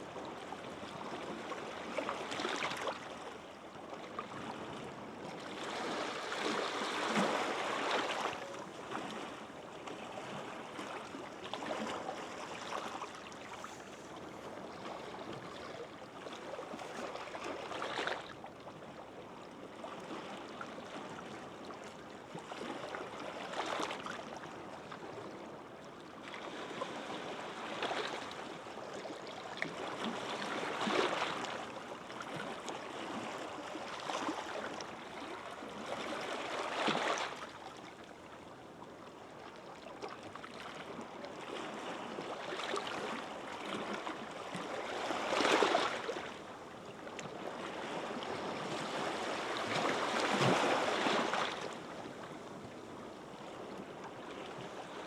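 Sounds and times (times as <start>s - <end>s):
small waves breaking on beach: 40.1s - 55.0s.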